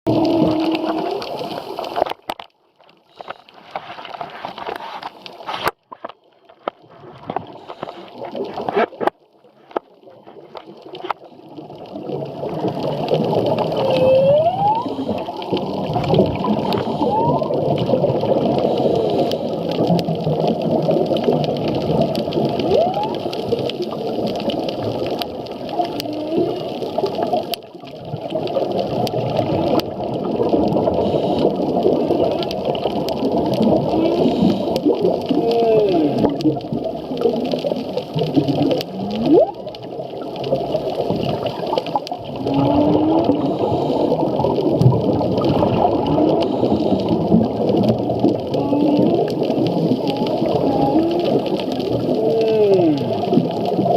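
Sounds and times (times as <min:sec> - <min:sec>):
rushing underwater noise: 0:00.1 - 0:53.9
whale song squeals: 0:13.7 - 0:15.2, 0:16.7 - 0:17.6, 0:22.6 - 0:23.3.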